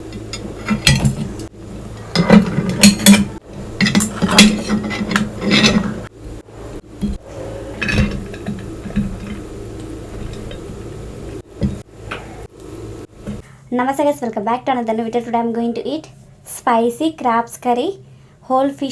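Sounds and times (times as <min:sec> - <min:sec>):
dishes and cutlery clattering: 0:00.1 - 0:01.4, 0:02.1 - 0:06.1.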